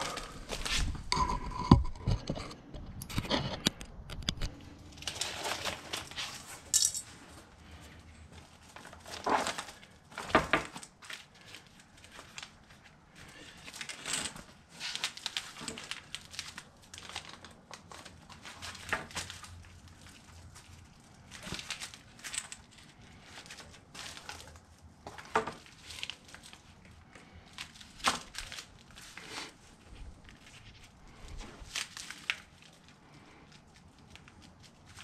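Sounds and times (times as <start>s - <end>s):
foam sheet rustling and scraping: 4.9s - 6.7s.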